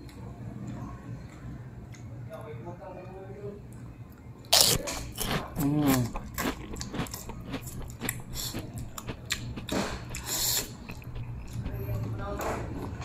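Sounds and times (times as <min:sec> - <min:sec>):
chewing and mouth smacks: 0:04.5 - 0:13.0
utensil clicks: 0:04.6 - 0:12.2
person humming: 0:04.7 - 0:06.8.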